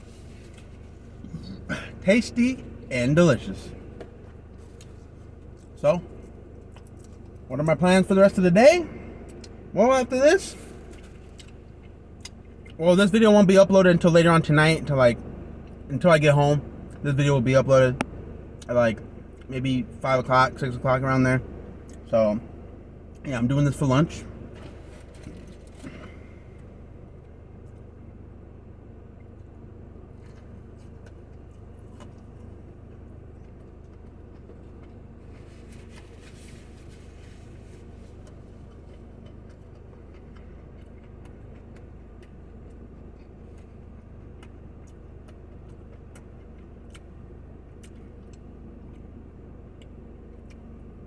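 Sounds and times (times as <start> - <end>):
steady low hum: 0.0 - 51.0
faint chewing: 3.6 - 7.5, 10.6 - 12.8, 29.2 - 51.0.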